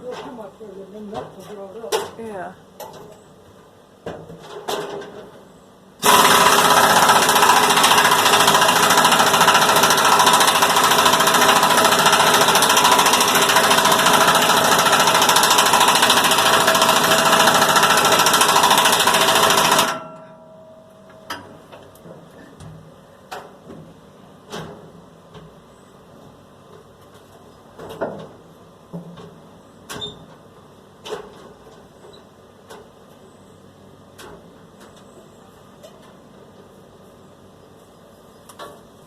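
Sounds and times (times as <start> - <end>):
machine hammering rattle: 6.0 - 20.4.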